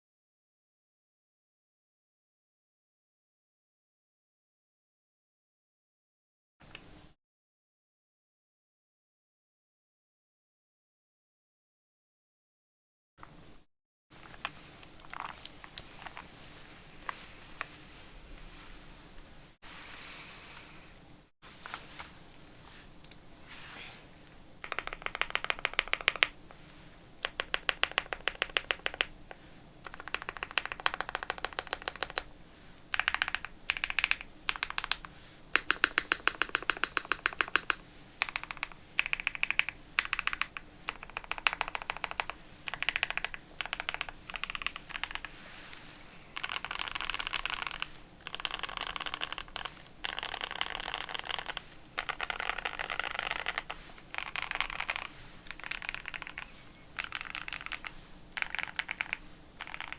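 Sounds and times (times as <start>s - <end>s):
typing on mechanical keyboard: 14.2s - 16.2s, 24.6s - 26.4s, 27.2s - 32.3s, 32.9s - 45.3s, 46.4s - 59.9s.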